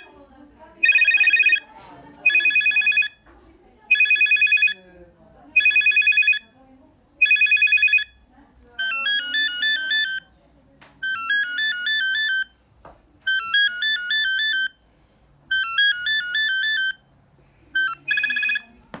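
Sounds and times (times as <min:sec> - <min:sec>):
electronic beeping ringtone: 0:00.8 - 0:03.2, 0:03.9 - 0:04.8, 0:05.6 - 0:06.5, 0:07.2 - 0:08.2, 0:08.8 - 0:10.3, 0:11.0 - 0:12.6, 0:13.3 - 0:14.8, 0:15.5 - 0:17.1, 0:17.7 - 0:18.8.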